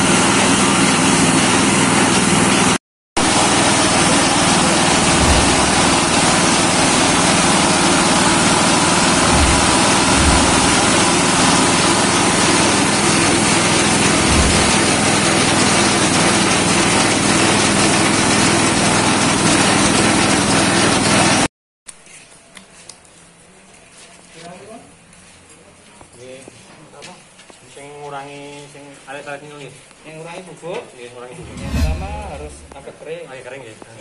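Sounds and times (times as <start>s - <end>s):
machine drone with grinding: 3.8s - 7.3s, 8.8s - 11.9s, 13.7s - 15.8s, 31.4s - 32.9s
low thumps: 5.0s - 7.0s, 9.0s - 11.8s, 13.9s - 15.4s, 31.4s - 32.9s.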